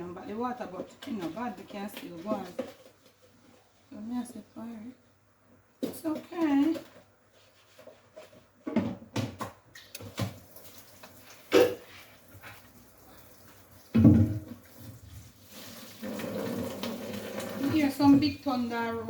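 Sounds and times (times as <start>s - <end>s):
kitchen items knocking and clattering: 0.4s - 3.2s, 5.8s - 10.4s, 13.9s - 15.2s, 16.0s - 19.0s.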